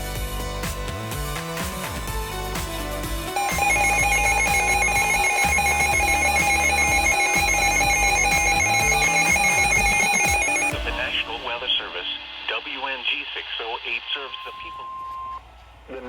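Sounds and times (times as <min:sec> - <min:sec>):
music: 0:00.0 - 0:12.8
steady electronic alert tone: 0:03.4 - 0:10.8.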